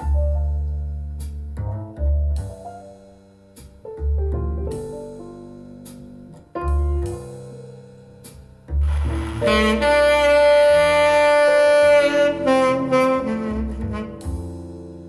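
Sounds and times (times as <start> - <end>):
double bass: 0.0 - 15.0
piano: 0.0 - 15.0
saxophone holding long note: 8.8 - 14.5.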